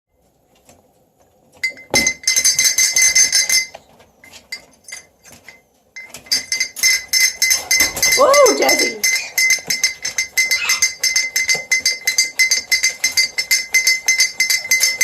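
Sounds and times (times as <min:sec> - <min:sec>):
metal handbell ringing: 0:04.5 - 0:15.0.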